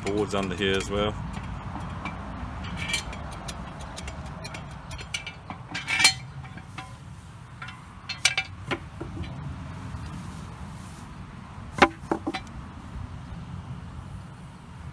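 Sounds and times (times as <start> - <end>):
loud metal clank: 0.0 - 7.0, 7.6 - 9.4
metal clinks and knocks: 0.0 - 9.6, 11.8 - 12.5.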